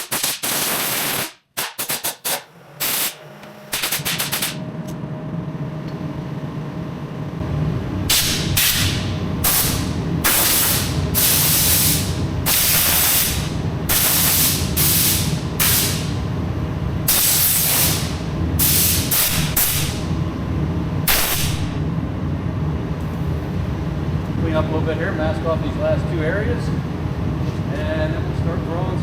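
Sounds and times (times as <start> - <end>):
steady low hum: 2.5 - 29.0
pressurised spray hissing: 8.1 - 16.1, 17.1 - 19.9.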